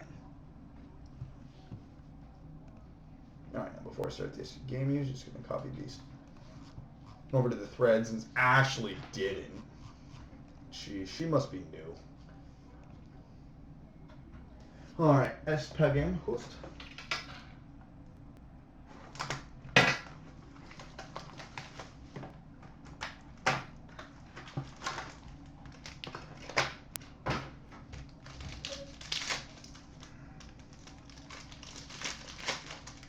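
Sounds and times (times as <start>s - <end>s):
foil packs crinkling and rustling: 19.0s - 26.9s, 27.8s - 33.0s.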